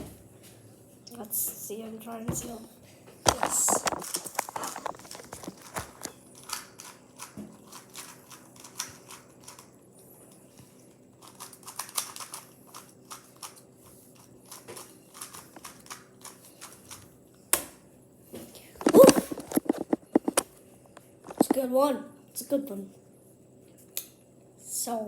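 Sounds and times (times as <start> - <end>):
speed cube plastic clicking: 3.3 - 9.7, 11.2 - 13.6, 14.5 - 17.0.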